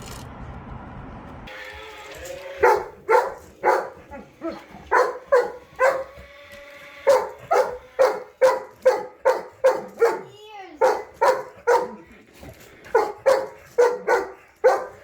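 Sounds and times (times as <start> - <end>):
dog barking: 2.6 - 6.2, 7.0 - 12.1, 12.9 - 15.0.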